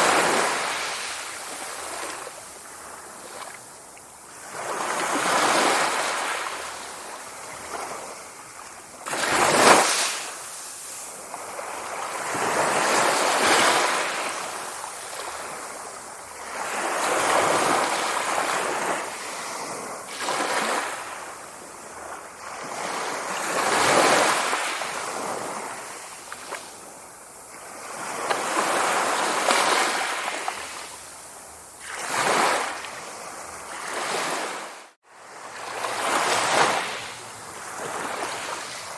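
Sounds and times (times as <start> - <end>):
sea waves breaking: 9.0 - 26.7, 31.8 - 38.9.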